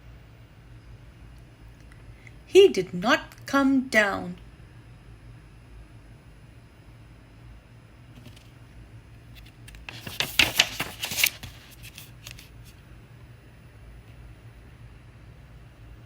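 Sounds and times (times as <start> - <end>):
book page turning: 8.2 - 8.6, 9.4 - 12.8.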